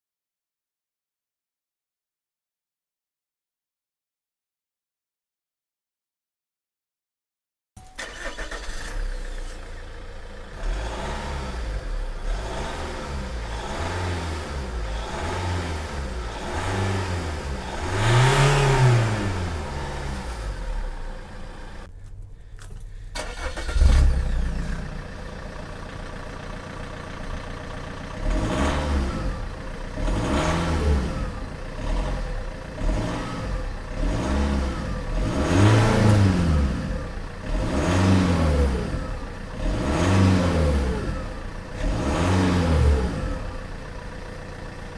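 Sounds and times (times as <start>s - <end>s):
diesel engine idling and revving: 8.0s - 21.9s, 22.9s - 44.9s.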